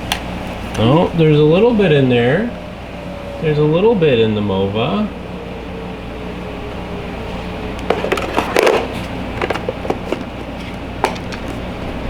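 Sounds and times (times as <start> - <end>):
plastic dustbin clicks and knocks: 7.8 - 12.0.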